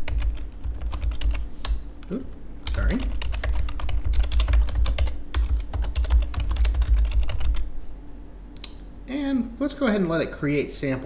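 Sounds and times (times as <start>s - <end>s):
fast typing on keyboard: 0.0s - 1.5s, 2.6s - 7.6s.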